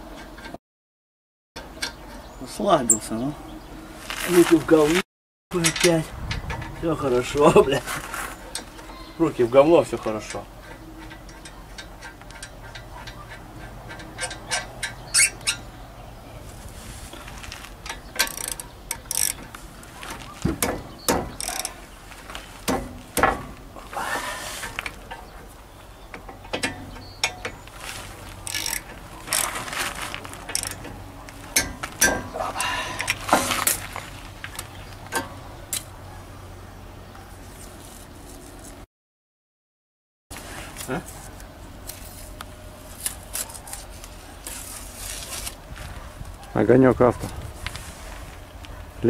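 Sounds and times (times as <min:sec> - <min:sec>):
metal tools clicking and clanking: 0:08.4 - 0:09.0, 0:09.8 - 0:15.7, 0:17.8 - 0:23.7, 0:26.1 - 0:33.9.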